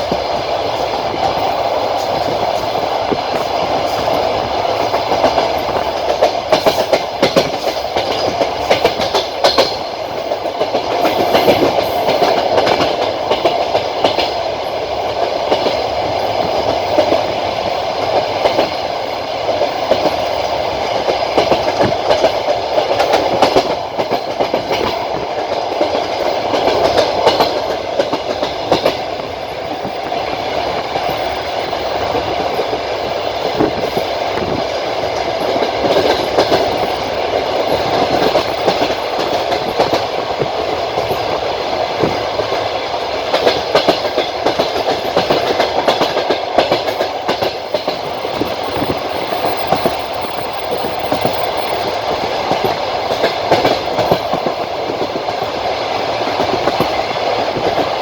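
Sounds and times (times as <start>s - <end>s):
steady train rumble: 0.0s - 58.0s
train wheels clacking over rail joints: 0.0s - 58.0s.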